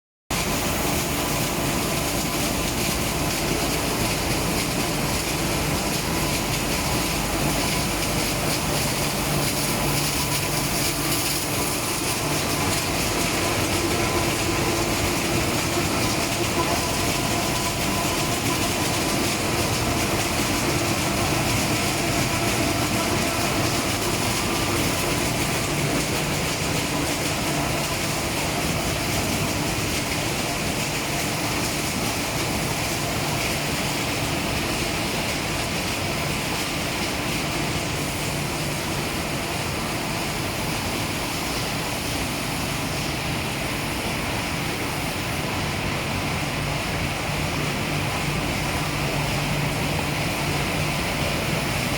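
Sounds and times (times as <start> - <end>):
die cutting machines running: 1.0 - 34.3.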